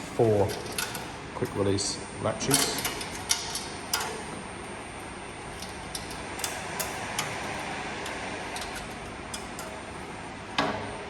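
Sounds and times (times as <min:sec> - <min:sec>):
latches clicking: 0:00.0 - 0:01.2, 0:02.5 - 0:04.3, 0:05.6 - 0:09.9.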